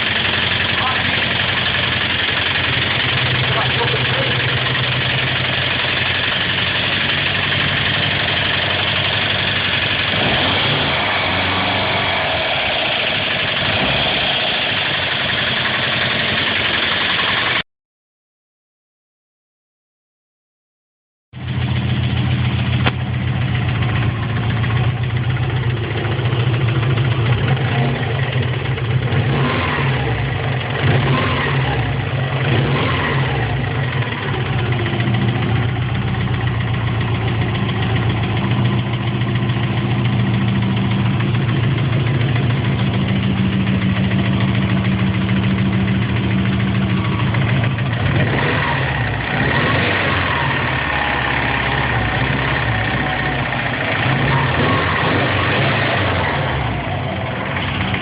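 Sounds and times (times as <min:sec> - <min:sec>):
car engine idling: 0:00.0 - 0:17.6, 0:21.4 - 0:58.0
engine knocking: 0:00.0 - 0:17.6, 0:21.4 - 0:58.0
engine revving: 0:00.0 - 0:17.6, 0:24.8 - 0:58.0.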